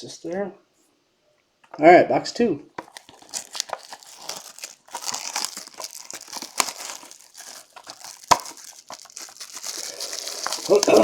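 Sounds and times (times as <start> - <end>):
plastic wrapping crinkling and tearing: 2.8 - 11.0.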